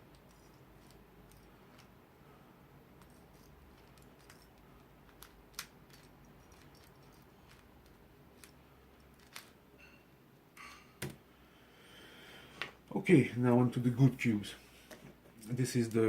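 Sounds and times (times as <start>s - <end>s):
puzzle cube plastic clicking: 3.0s - 9.6s.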